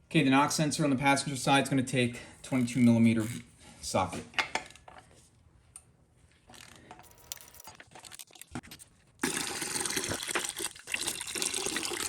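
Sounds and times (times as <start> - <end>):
coolant splashing into drain pan: 9.2 - 12.0.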